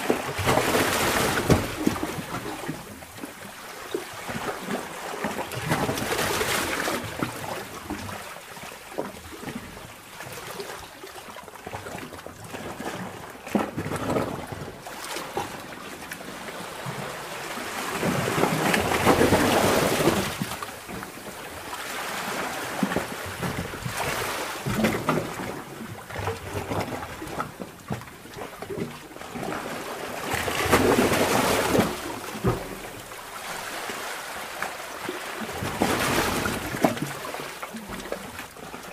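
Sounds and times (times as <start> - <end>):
underwater water surging: 12.6 - 38.9.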